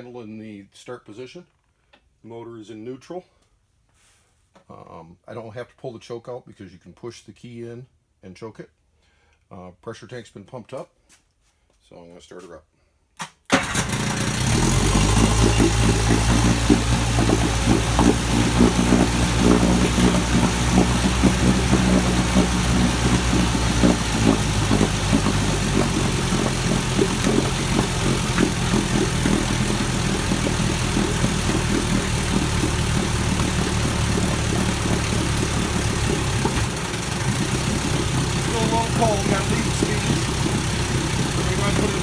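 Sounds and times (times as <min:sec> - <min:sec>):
outboard motor idling: 0:13.6 - 0:42.0.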